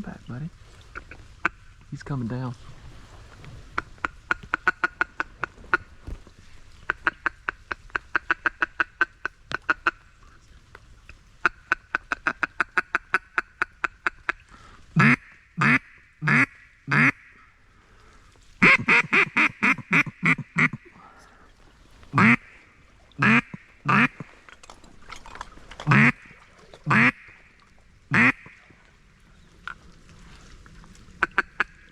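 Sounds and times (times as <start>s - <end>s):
duck call quacks: 3.8s - 5.9s, 11.4s - 14.4s, 15.0s - 17.4s, 18.6s - 20.8s, 22.2s - 22.6s, 23.2s - 24.3s, 25.9s - 26.2s, 26.9s - 27.4s, 28.1s - 28.6s, 31.2s - 31.9s
duck call feeding chuckle: 18.6s - 20.8s.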